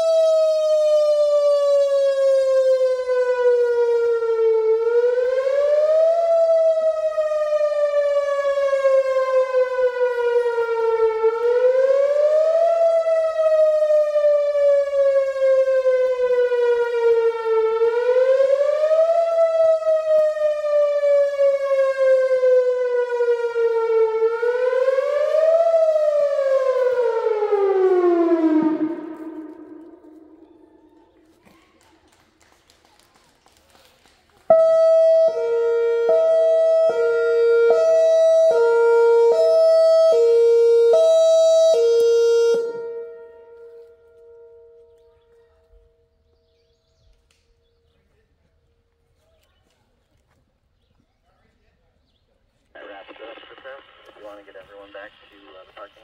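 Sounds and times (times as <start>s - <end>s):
siren wailing: 0.0s - 31.4s, 34.5s - 46.1s.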